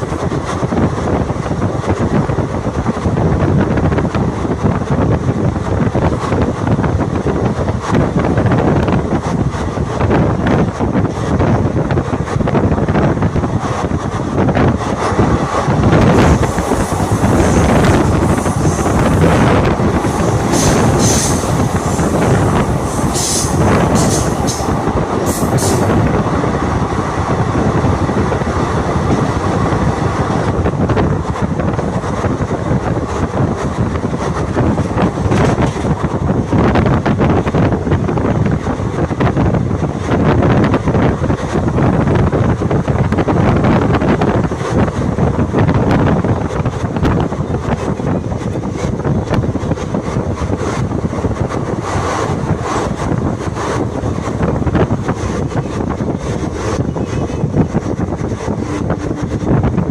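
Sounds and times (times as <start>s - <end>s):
train wheels rumbling on rails: 0.0s - 59.9s
rushing air: 11.4s - 38.6s, 43.6s - 59.9s.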